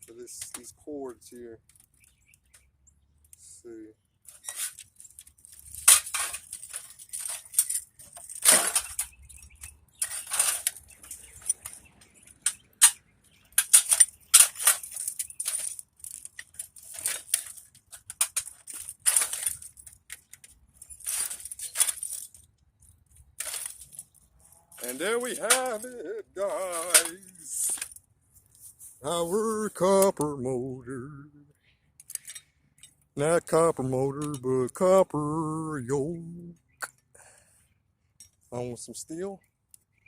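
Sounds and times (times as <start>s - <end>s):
metal and plastic parts clicking: 4.3s - 26.0s, 26.7s - 28.0s, 32.0s - 34.5s.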